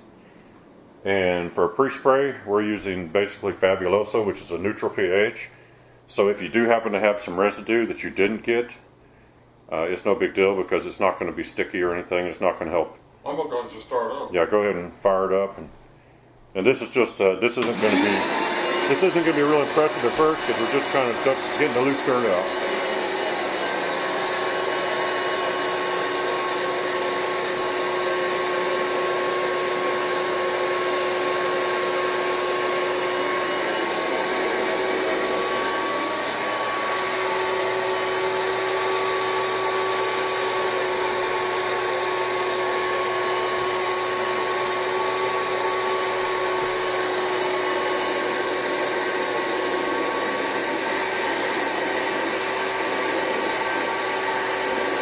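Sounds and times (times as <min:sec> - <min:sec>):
vacuum motor whining: 0:17.6 - 0:55.0.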